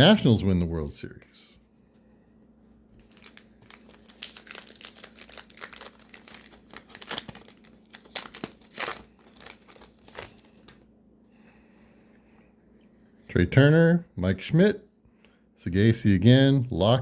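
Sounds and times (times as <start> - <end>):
foil wrapper tearing and crinkling: 3.0 - 10.8.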